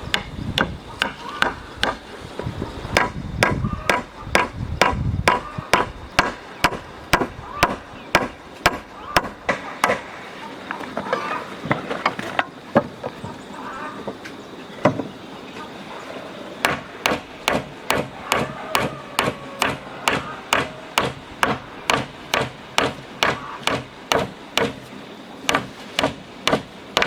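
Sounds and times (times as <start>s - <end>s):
sharp strikes on wood: 0.1s - 2.0s, 3.0s - 10.2s, 16.6s - 24.9s, 25.5s - 27.0s.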